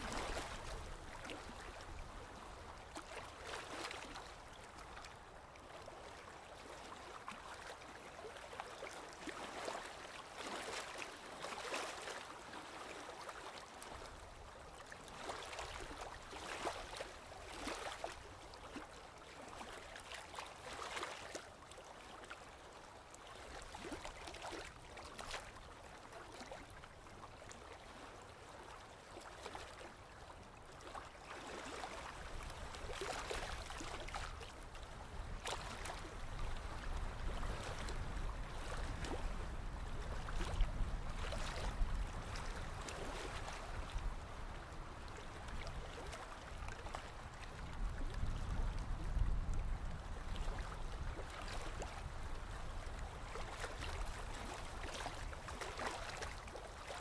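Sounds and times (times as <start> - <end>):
short water splashes: 0.0 - 5.0, 8.6 - 14.2, 14.8 - 22.4, 23.3 - 25.6, 30.8 - 39.4, 40.1 - 49.3, 49.9 - 57.0
sea water lapping: 0.0 - 22.4, 23.0 - 57.0.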